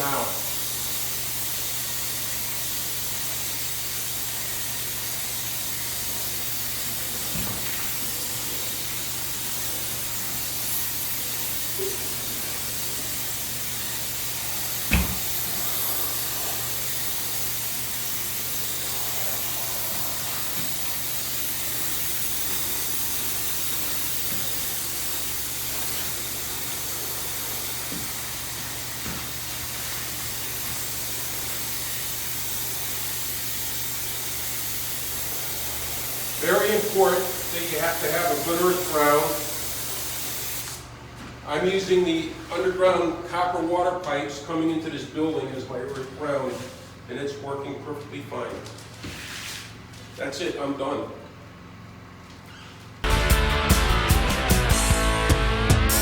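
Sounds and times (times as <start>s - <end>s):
spray gun hissing: 0.0s - 40.9s.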